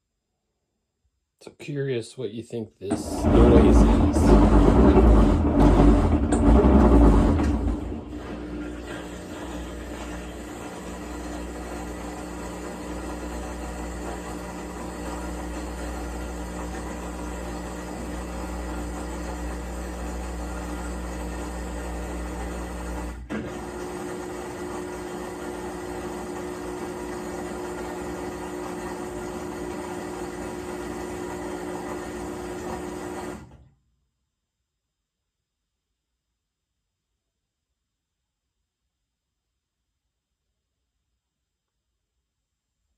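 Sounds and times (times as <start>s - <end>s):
washing machine spin whine: 2.9s - 33.6s.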